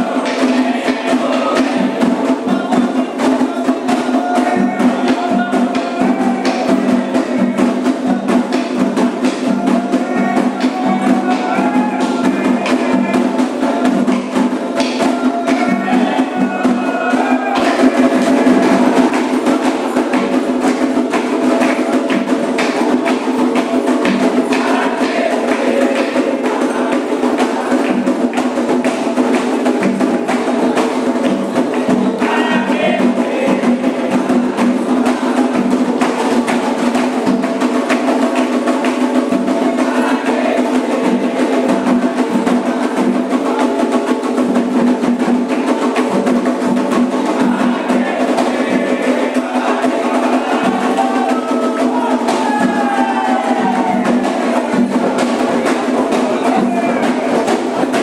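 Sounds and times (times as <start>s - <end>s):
hand drums playing fast rhythm: 0.0s - 58.0s
voices singing: 0.0s - 58.0s.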